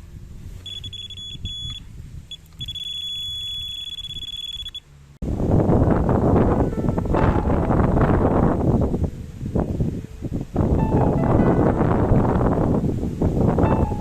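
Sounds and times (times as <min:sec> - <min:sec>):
wind rumble on microphone: 0:00.0 - 0:14.0
bite alarm beeping: 0:00.6 - 0:04.9.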